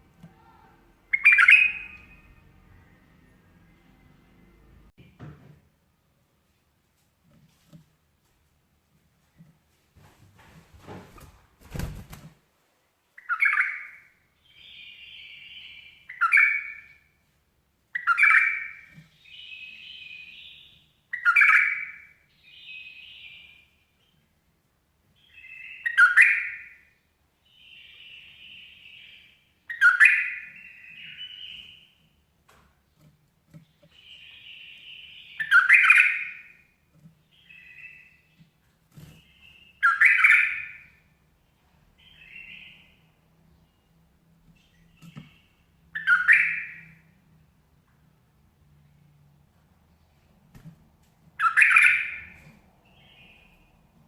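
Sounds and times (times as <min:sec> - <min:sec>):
bulbul calling: 0:01.1 - 0:02.2, 0:45.3 - 0:47.0, 0:51.4 - 0:52.4.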